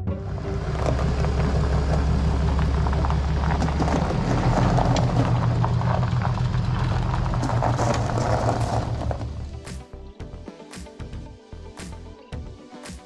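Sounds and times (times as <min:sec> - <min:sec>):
engine droning under load: 0:00.0 - 0:09.8.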